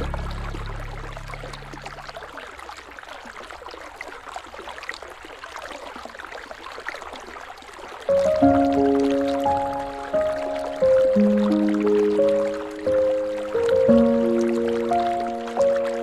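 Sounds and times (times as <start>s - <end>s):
music with sustained notes: 0.0s - 2.2s, 8.1s - 16.0s
river water flowing: 0.0s - 16.0s
water trickling ticks: 1.1s - 16.0s.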